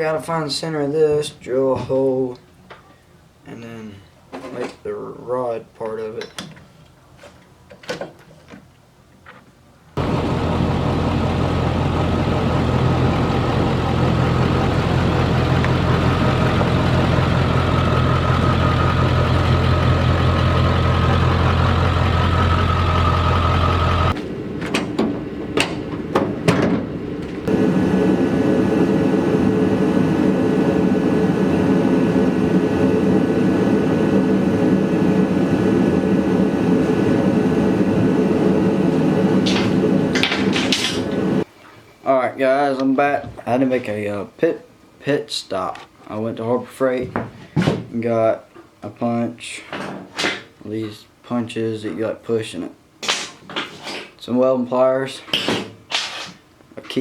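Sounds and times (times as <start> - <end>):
electric motor humming: 10.0 - 24.2, 27.5 - 41.4.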